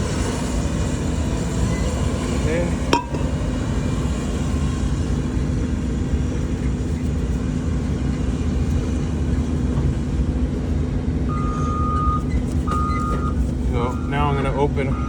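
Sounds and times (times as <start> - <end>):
diesel engine rumbling: 0.0 - 15.0.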